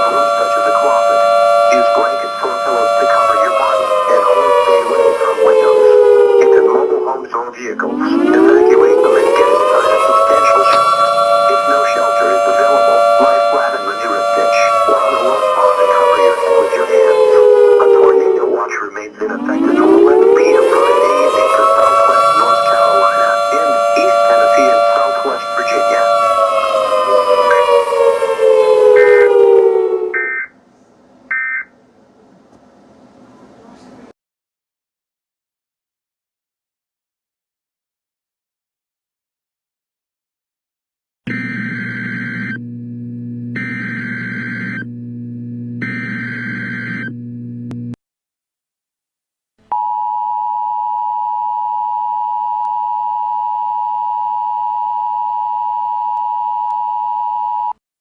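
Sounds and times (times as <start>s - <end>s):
civil defense siren winding down: 0.0s - 30.4s, 41.3s - 48.0s
electronic alarm tone: 0.0s - 30.5s, 41.3s - 47.5s, 49.7s - 57.8s.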